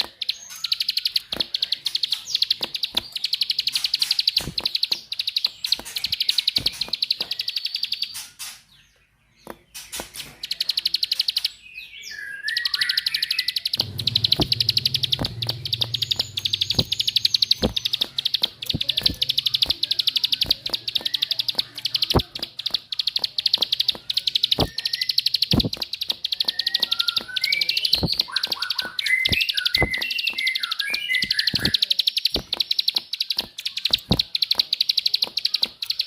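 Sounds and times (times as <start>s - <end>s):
songbird clicking trill: 0.0s - 8.6s, 9.4s - 36.0s
low bird twitter: 0.0s - 36.0s
low hum: 13.8s - 18.2s.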